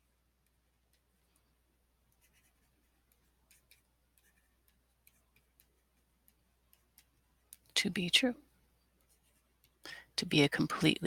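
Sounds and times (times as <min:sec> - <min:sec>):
pen tapping and writing: 0:00.4 - 0:07.8, 0:08.9 - 0:09.8.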